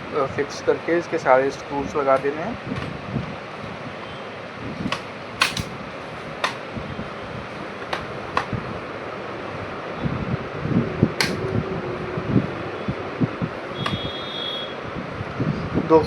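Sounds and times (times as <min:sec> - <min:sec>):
laptop cover plastic clicks: 0:04.9 - 0:05.7, 0:11.2 - 0:11.5.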